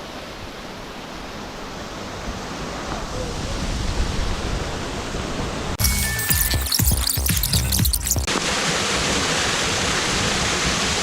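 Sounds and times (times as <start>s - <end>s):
small waterfall rushing: 8.3s - 11.0s.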